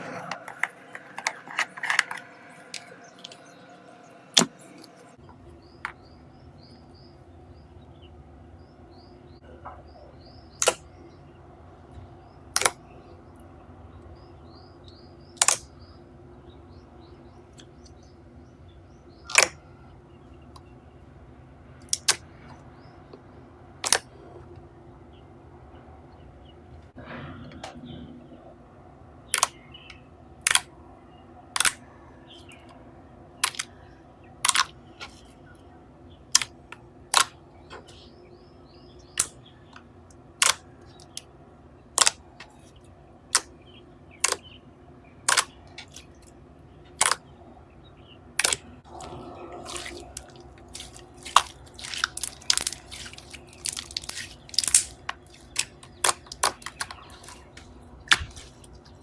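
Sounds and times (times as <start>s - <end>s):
slime popping and squishing: 33.4s - 33.7s, 34.4s - 34.7s, 48.4s - 59.0s.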